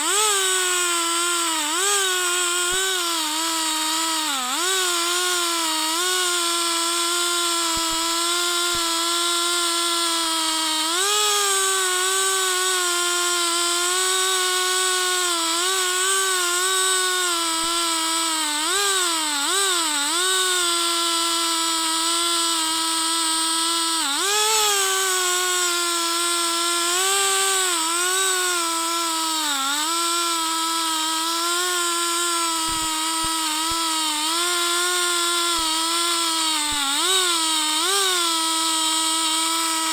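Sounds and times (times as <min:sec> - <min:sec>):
chainsaw cutting through log: 0:00.0 - 0:39.9.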